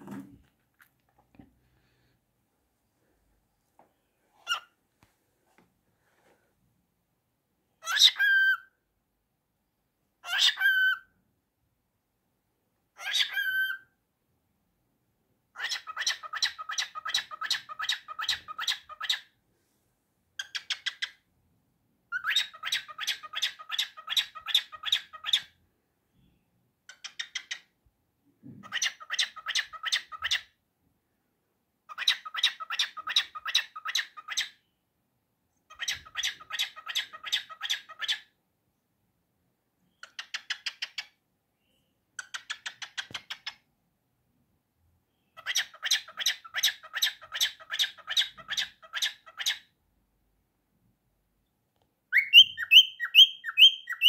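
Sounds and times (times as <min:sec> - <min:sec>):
cockatiel squawking: 0:04.4 - 0:04.7, 0:07.8 - 0:08.7, 0:10.2 - 0:11.1, 0:13.0 - 0:13.9, 0:15.6 - 0:19.3, 0:22.1 - 0:25.5, 0:28.6 - 0:30.5, 0:31.9 - 0:34.6, 0:35.7 - 0:38.3, 0:45.4 - 0:49.6, 0:52.2 - 0:54.0.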